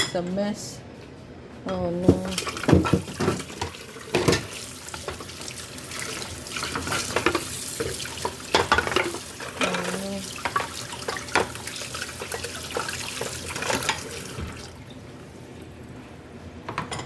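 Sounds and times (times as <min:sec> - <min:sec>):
dishes and utensils clinking: 0:02.0 - 0:05.4, 0:06.5 - 0:11.6, 0:16.7 - 0:17.0
tap water running into sink: 0:02.0 - 0:15.0.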